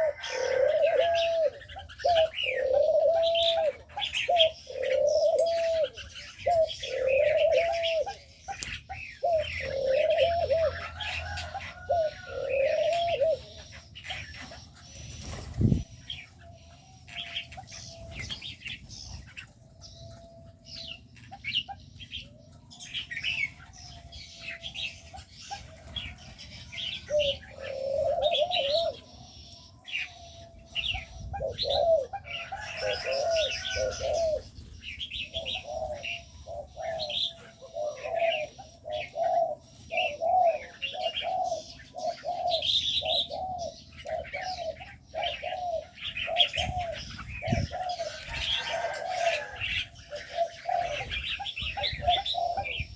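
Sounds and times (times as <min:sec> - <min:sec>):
doves cooing: 0:00.0 - 0:52.9
small birds chirping: 0:00.0 - 0:52.9.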